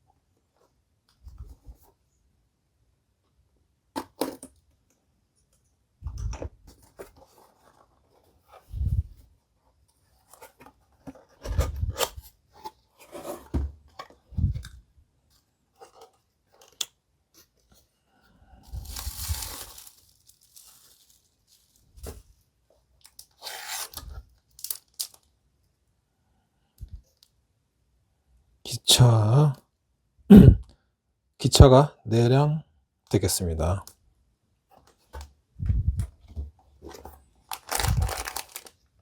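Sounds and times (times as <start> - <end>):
packaging tearing and crinkling: 18.8 - 21.8, 23.1 - 25.2, 37.5 - 38.8.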